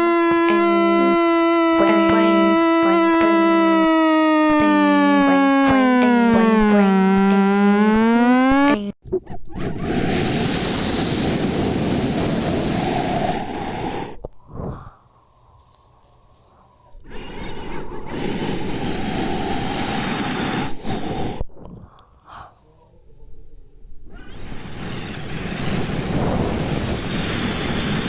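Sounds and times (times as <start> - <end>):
loud harsh rushing noise: 9.8 - 14.2.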